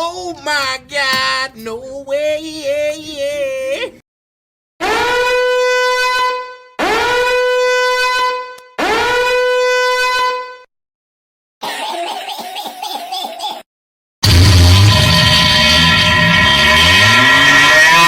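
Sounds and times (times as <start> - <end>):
air horn blasts: 4.8 - 10.7, 14.2 - 18.0.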